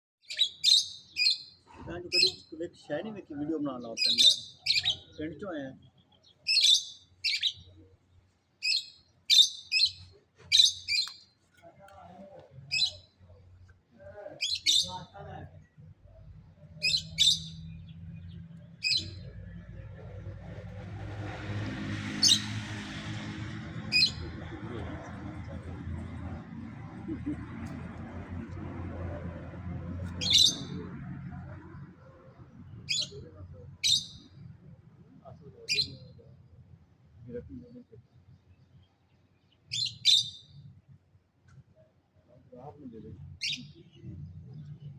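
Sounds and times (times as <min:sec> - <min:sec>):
parrots screeching: 0:04.0 - 0:05.1, 0:06.5 - 0:07.6, 0:16.8 - 0:17.6, 0:22.2 - 0:22.6, 0:30.2 - 0:30.8, 0:39.7 - 0:40.4
low background rumble: 0:13.0 - 0:39.1.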